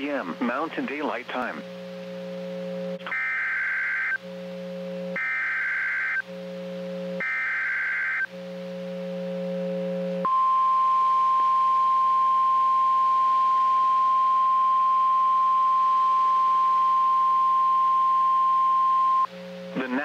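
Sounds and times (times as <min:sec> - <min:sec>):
low receiver buzz: 0:00.0 - 0:20.0
steady high alarm beep: 0:10.2 - 0:19.3.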